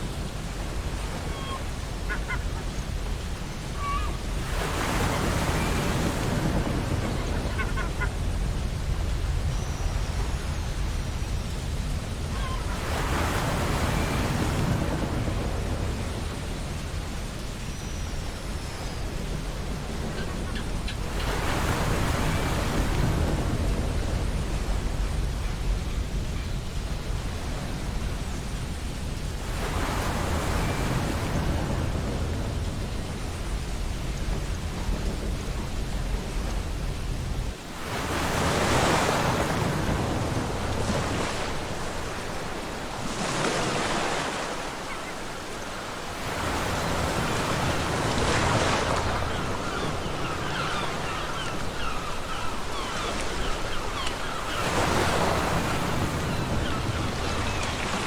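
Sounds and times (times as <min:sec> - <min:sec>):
low wind rumble: 0:00.0 - 0:58.0
ocean surf washing onto beach: 0:00.0 - 0:58.0.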